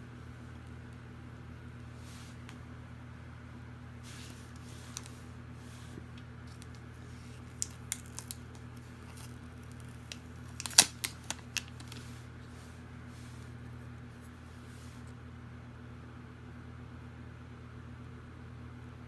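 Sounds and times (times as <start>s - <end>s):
packaging clicks and taps: 7.4s - 12.1s.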